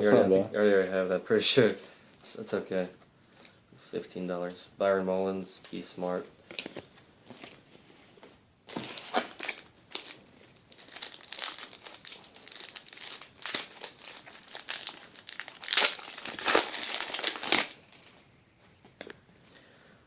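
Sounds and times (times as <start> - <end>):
wrapper crinkling and tearing: 8.7 - 18.3.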